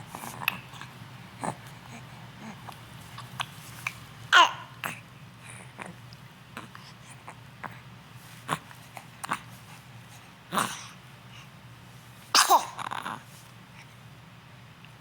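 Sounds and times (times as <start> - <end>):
sharp sneeze: 12.4 - 12.8.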